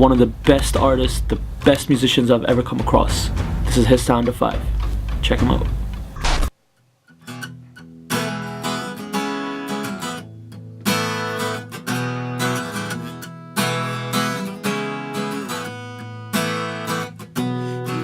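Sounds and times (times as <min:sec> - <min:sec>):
acoustic guitar strumming chords: 0:00.0 - 0:06.4.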